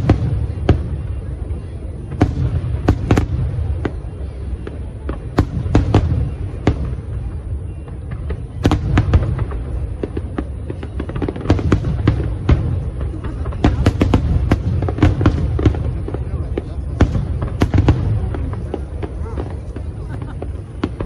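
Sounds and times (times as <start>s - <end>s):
fireworks cracks and bangs: 0.0s - 21.0s
low rumble of fireworks: 0.0s - 21.0s.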